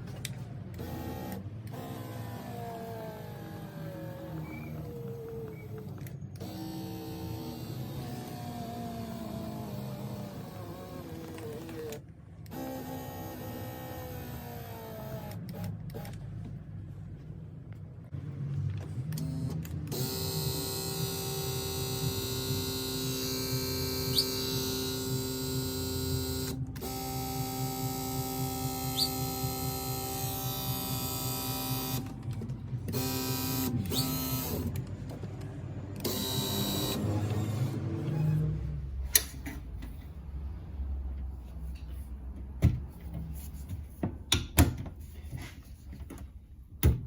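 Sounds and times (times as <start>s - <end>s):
electric seat motor whining: 0.8s - 16.2s, 19.1s - 32.2s, 32.9s - 34.8s, 36.0s - 38.8s.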